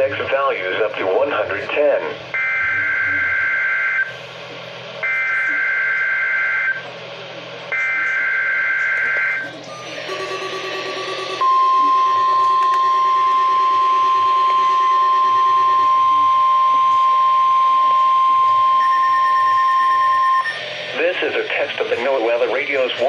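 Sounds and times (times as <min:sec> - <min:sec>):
steady warning alarm tone: 0:08.9 - 0:23.0
screeching digital data burst: 0:09.0 - 0:22.9.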